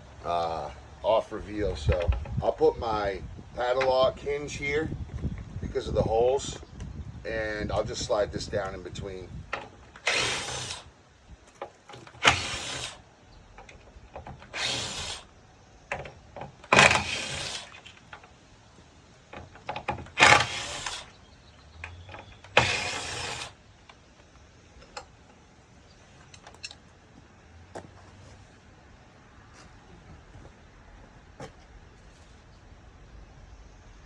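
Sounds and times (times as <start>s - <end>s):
power drill bursts: 9.9s - 10.9s, 12.0s - 13.1s, 14.4s - 15.3s, 16.7s - 17.9s, 20.1s - 21.2s, 22.4s - 23.6s.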